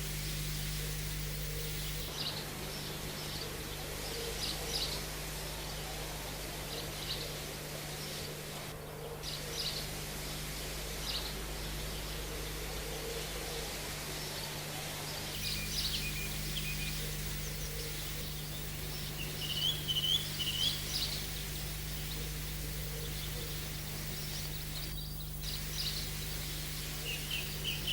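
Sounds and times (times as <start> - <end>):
small birds chirping: 0.0 - 3.5, 15.4 - 27.9
steady low hum: 0.0 - 27.9.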